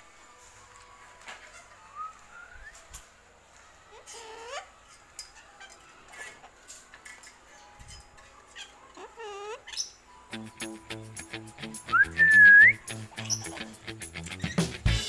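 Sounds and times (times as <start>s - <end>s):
cockatoo calling: 11.9s - 14.8s.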